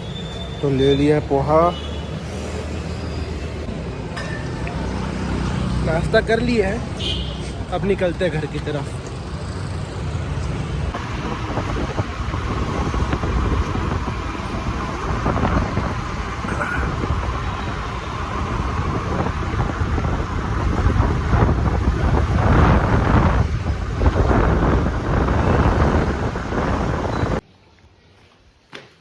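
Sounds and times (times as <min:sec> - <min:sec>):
road traffic: 0:00.0 - 0:28.9
wind on microphone: 0:10.9 - 0:27.4.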